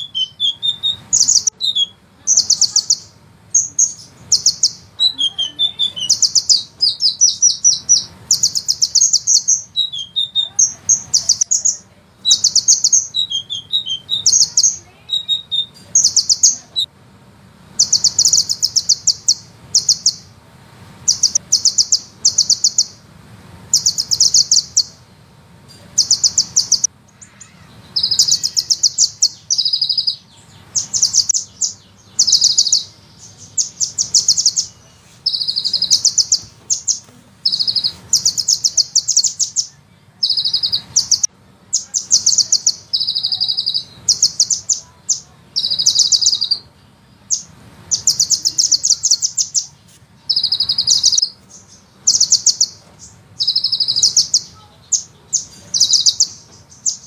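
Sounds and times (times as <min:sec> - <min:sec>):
bird high-pitched trills: 0:00.0 - 0:16.9, 0:17.7 - 0:20.4, 0:21.0 - 0:23.0, 0:23.7 - 0:25.1, 0:25.7 - 0:57.0.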